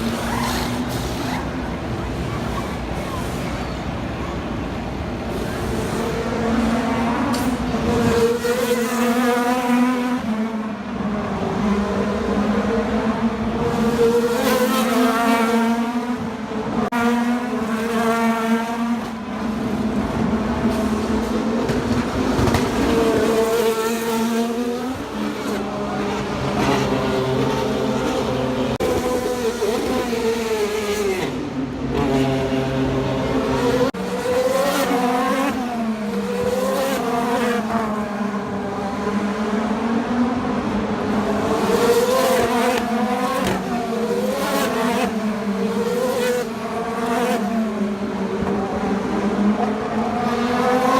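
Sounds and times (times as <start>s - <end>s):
race cars passing at speed: 0.0s - 50.9s.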